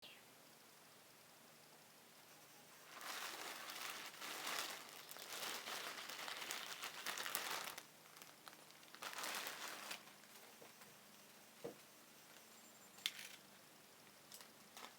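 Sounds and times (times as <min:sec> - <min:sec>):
packaging crinkling: 0:02.8 - 0:10.5, 0:14.3 - 0:14.9.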